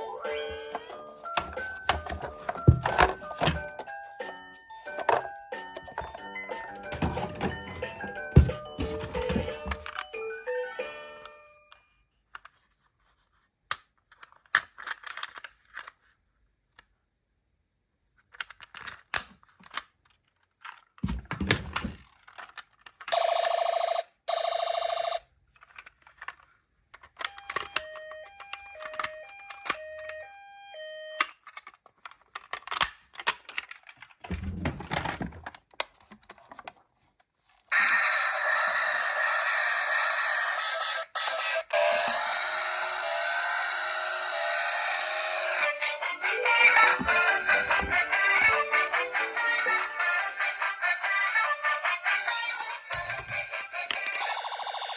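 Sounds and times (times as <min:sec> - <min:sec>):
toy car clicking and rattling: 0:13.7 - 0:16.1, 0:18.2 - 0:21.0, 0:21.7 - 0:29.8, 0:31.3 - 0:36.8, 0:50.3 - 0:54.9
toy electronic siren: 0:27.2 - 0:31.5, 0:37.7 - 0:54.9.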